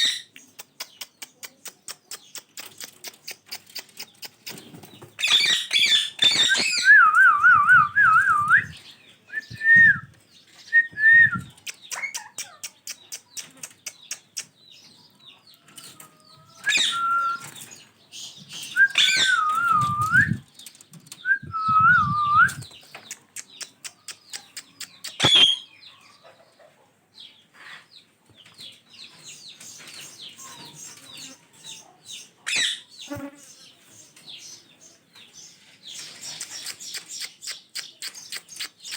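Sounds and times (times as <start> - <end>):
parakeets calling: 4.6 - 6.9, 24.2 - 25.8, 32.5 - 33.3.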